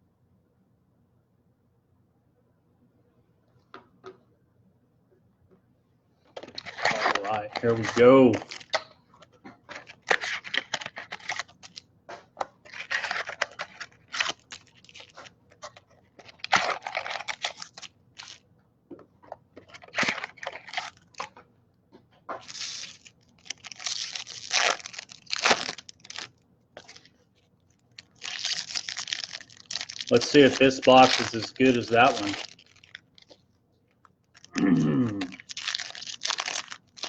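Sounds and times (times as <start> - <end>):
plastic wrapping tearing and crinkling: 6.4 - 11.9, 12.5 - 18.4, 19.6 - 21.4, 22.4 - 33.4, 34.3 - 37.0.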